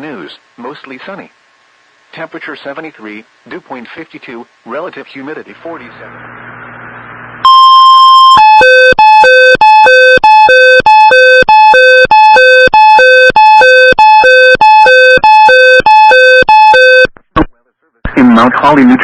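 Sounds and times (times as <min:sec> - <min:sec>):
electronic two-tone alert beeps: 0:07.4 - 0:17.1.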